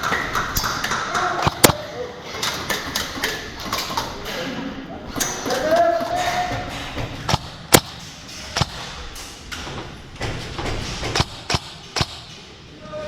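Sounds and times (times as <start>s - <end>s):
airsoft gun shots: 1.4s - 1.8s, 7.2s - 8.0s, 11.0s - 12.4s.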